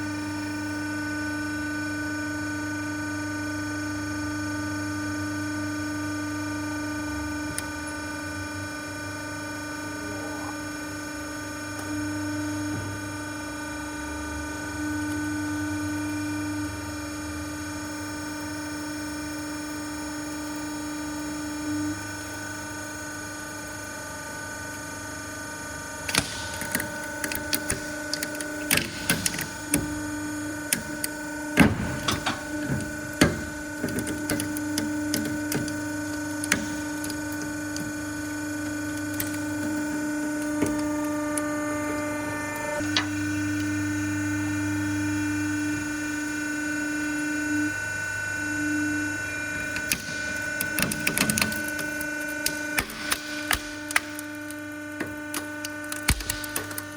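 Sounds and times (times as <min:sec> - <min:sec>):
hydraulic press humming: 0:25.5 - 0:56.9
object cracking and snapping: 0:49.8 - 0:56.9.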